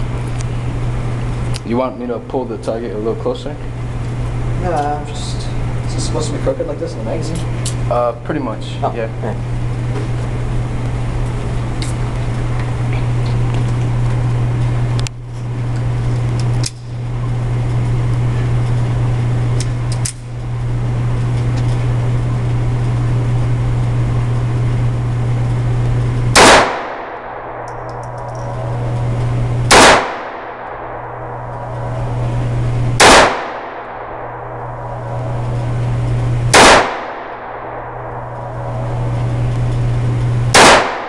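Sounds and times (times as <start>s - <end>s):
steady low hum: 0.0s - 41.0s
faint gunshots cracking: 26.3s - 28.6s, 29.7s - 32.0s, 33.0s - 34.4s, 36.5s - 38.8s, 40.5s - 41.0s
loud handgun shots: 26.3s - 28.8s, 29.7s - 32.0s, 33.0s - 35.4s, 36.5s - 39.2s, 40.5s - 41.0s.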